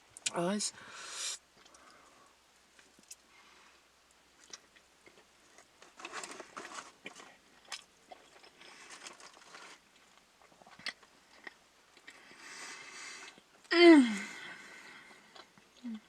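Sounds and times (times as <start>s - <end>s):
person chewing food: 1.6s - 2.1s, 2.8s - 3.3s, 4.4s - 13.7s, 15.0s - 16.0s.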